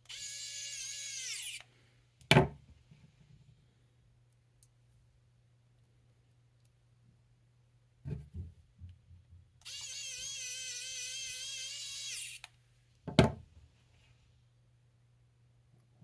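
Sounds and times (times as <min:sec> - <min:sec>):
electric drill motor running: 0:00.1 - 0:01.6, 0:09.6 - 0:12.5.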